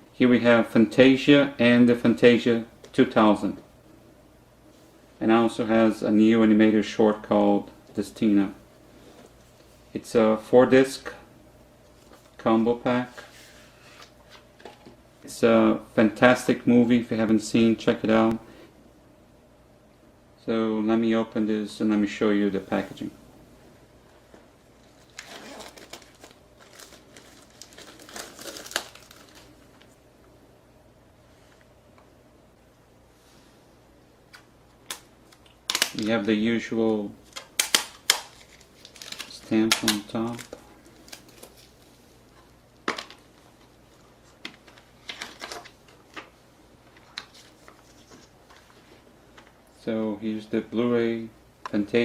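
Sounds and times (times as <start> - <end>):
packaging crinkling: 24.7 - 29.9, 34.8 - 36.3, 37.2 - 41.8, 42.8 - 46.3.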